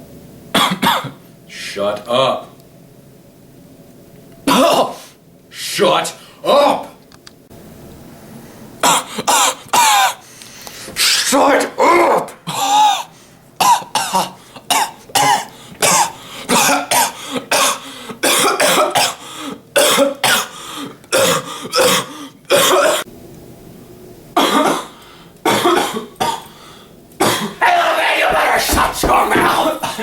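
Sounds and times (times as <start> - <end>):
man coughing: 0.6 - 1.2, 4.5 - 5.0, 8.8 - 10.2, 12.4 - 19.2, 19.8 - 23.1, 24.4 - 26.5, 27.2 - 27.6, 28.3 - 30.0.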